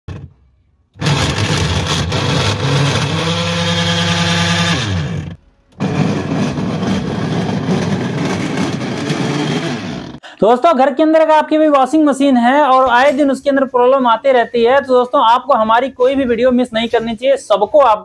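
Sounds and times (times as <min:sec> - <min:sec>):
motor hum: 0:01.0 - 0:10.2.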